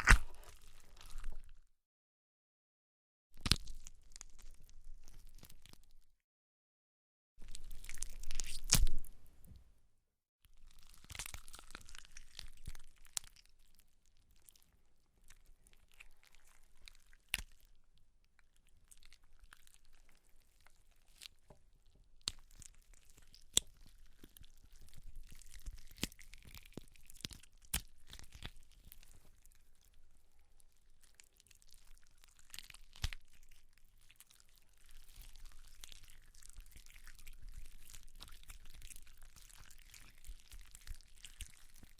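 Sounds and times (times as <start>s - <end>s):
sharp bone-snapping cracks: 0.0s - 0.5s
wet flesh tearing and crunching: 0.0s - 1.6s, 3.4s - 5.9s, 7.5s - 9.2s, 10.7s - 13.6s, 15.3s - 17.8s, 22.1s - 29.9s, 30.6s - 41.9s.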